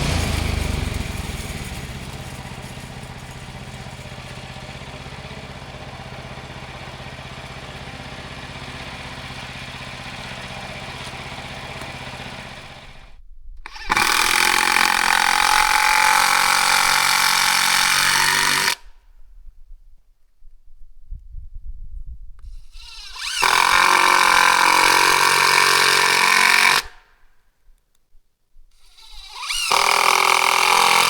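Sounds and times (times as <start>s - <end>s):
high-pitched power saw: 0.0s - 13.1s, 13.7s - 18.8s, 22.5s - 27.0s, 28.8s - 31.0s
small engine running: 0.0s - 18.8s, 22.4s - 27.0s, 28.8s - 31.0s.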